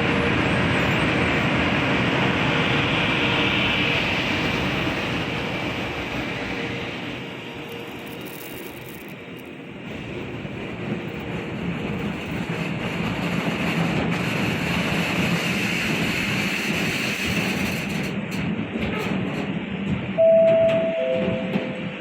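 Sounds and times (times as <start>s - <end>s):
train rolling rumble: 0.0s - 22.0s
two-note tone: 20.2s - 21.9s.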